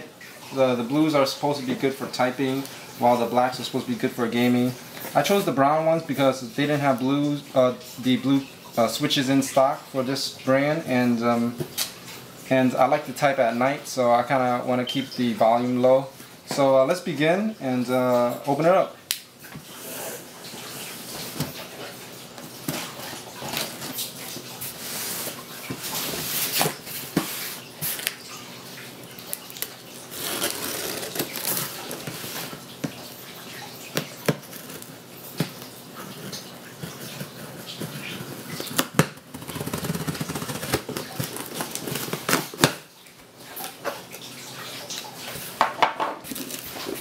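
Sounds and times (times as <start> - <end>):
box contents rustling and scraping: 22.6 - 28.1, 30.1 - 32.7, 36.8 - 42.7, 46.2 - 47.0.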